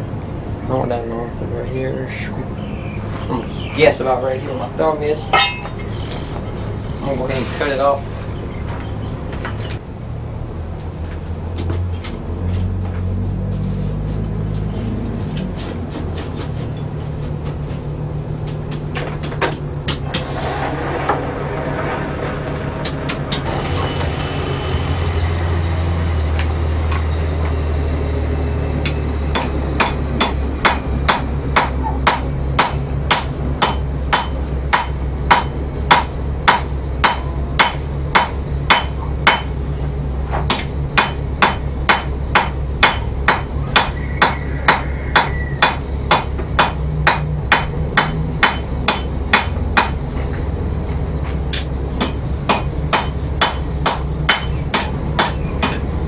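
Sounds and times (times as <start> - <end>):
steady low hum: 0.0 - 56.0
hammer striking metal on anvil: 5.3 - 6.0, 19.5 - 20.3, 22.8 - 24.3, 28.8 - 39.6, 40.5 - 50.0, 51.5 - 55.9.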